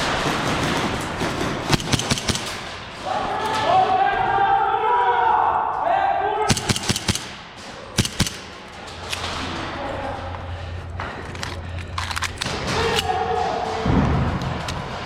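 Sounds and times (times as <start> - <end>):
airsoft guns firing: 0.0 - 3.4, 6.5 - 9.4.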